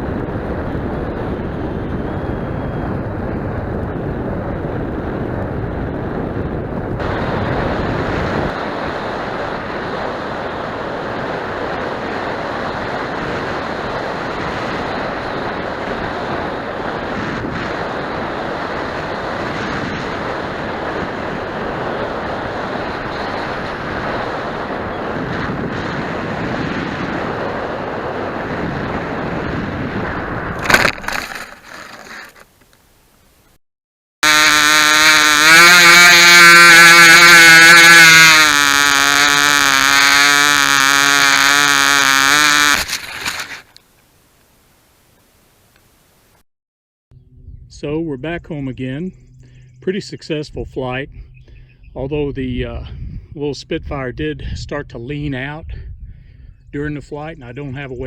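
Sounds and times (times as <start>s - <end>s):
wind rushing over microphone: 0.0s - 31.2s, 47.2s - 58.0s
loud pitched tone: 34.2s - 42.8s.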